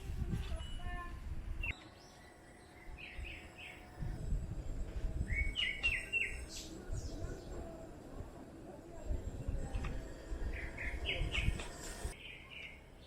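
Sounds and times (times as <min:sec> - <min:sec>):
low rumble: 0:02.9 - 0:12.2
small birds chirping: 0:05.2 - 0:13.0.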